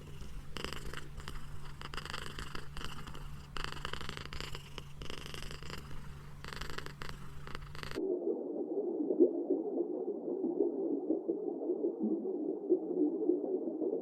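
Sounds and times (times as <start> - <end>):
cat purring: 0.0 - 8.0.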